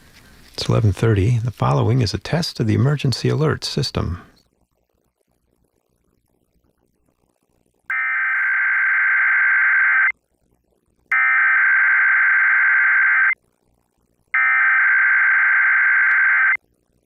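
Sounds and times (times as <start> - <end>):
screechy digital data tones: 7.9 - 10.1, 11.1 - 13.4, 14.4 - 16.6.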